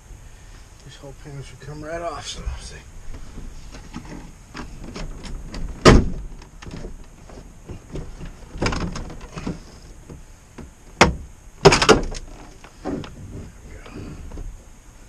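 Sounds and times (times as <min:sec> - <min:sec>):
panel knocks and sharp snaps: 0:04.9 - 0:07.0, 0:10.6 - 0:12.3.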